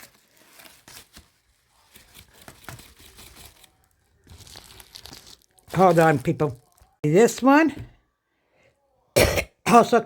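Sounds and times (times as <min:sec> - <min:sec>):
packaging crinkling and rustling: 0:00.0 - 0:07.0.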